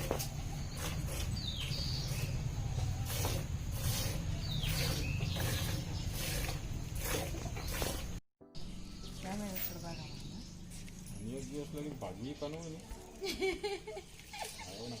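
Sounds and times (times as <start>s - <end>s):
milk squirting: 3.0s - 8.2s.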